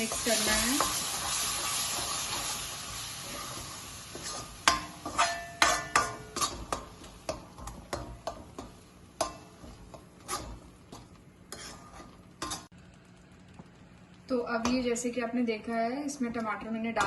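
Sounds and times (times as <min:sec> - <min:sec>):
spoon scraping a cooking pan: 0:00.0 - 0:12.7
frying sizzle: 0:00.0 - 0:17.0.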